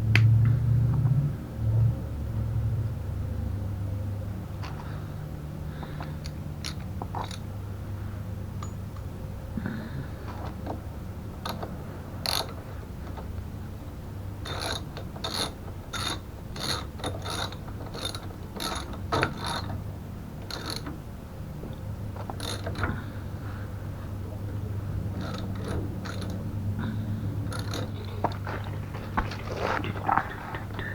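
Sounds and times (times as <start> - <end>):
steady low hum: 0.0 - 30.9
ratchet wrench clicking: 11.4 - 12.6, 14.4 - 19.7, 20.4 - 20.9, 22.3 - 22.9, 25.2 - 26.4, 27.5 - 28.0.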